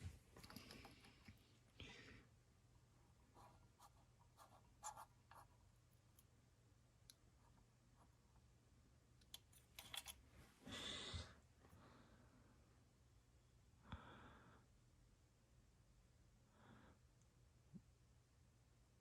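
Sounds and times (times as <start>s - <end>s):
faint clicks and light taps: 0.4s - 1.4s.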